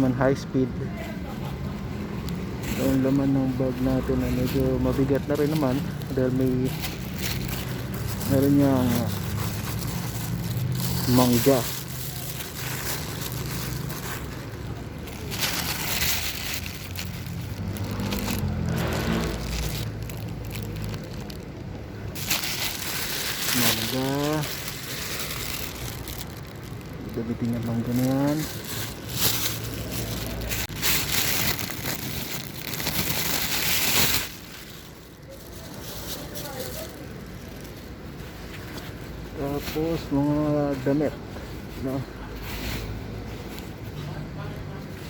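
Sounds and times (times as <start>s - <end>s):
bag rustling and crinkling: 1.7s - 43.9s.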